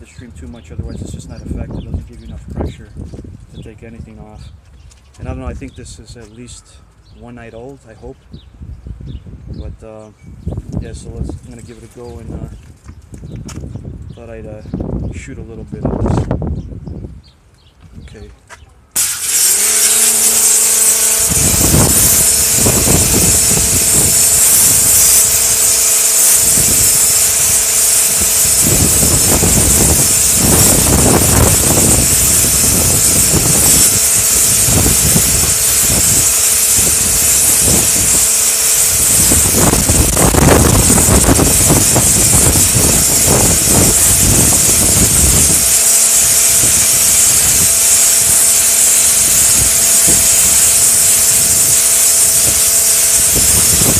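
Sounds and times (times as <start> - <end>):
pressure washer jet hissing: 19.0 - 53.9
pump hum: 19.0 - 53.9.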